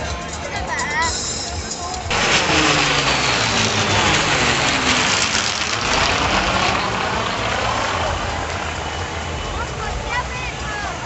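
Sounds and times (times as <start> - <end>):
propeller aircraft flying overhead: 2.1 - 9.7.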